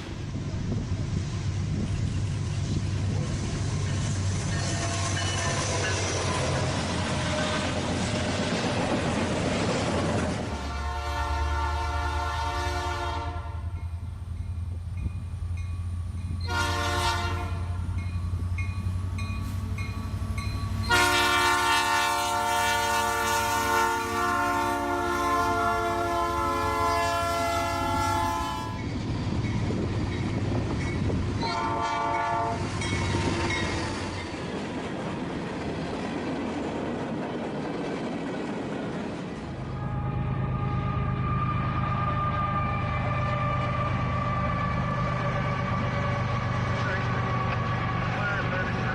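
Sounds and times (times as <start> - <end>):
rail noise: 0.0 - 48.9
locomotive air horn blasts: 10.5 - 13.8, 16.4 - 17.9, 20.9 - 28.8, 31.4 - 33.6, 39.7 - 46.5.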